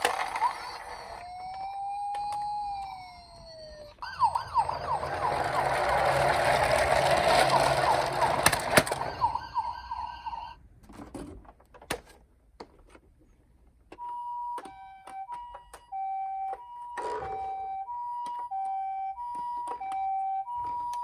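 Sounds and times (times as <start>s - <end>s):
plastic toys clicking and knocking: 0.0s - 3.0s, 4.4s - 10.0s
toy ambulance two-tone siren: 0.0s - 10.6s, 14.0s - 21.0s.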